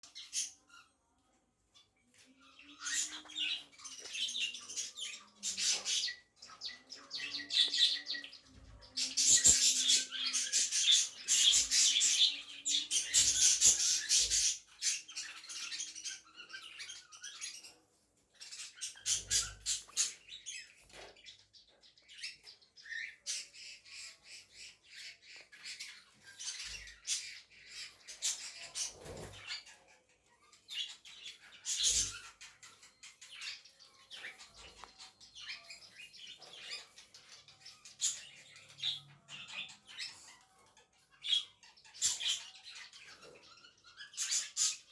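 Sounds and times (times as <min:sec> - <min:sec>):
cockatiel chirping and squawking: 0:02.4 - 0:17.8, 0:18.4 - 0:21.1, 0:22.5 - 0:44.9.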